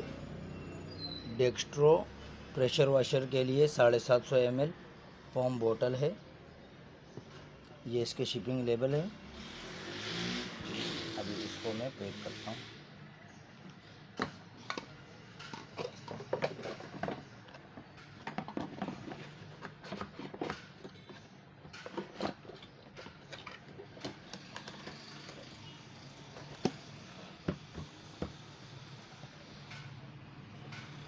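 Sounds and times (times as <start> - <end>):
clicks and rustles of packing: 14.2 - 25.6.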